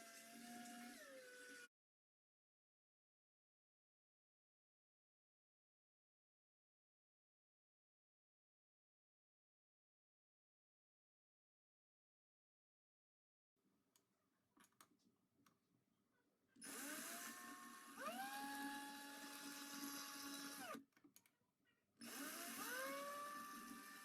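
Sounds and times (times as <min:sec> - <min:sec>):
power drill whining: 0:00.0 - 0:01.7, 0:16.6 - 0:20.8, 0:22.0 - 0:24.0.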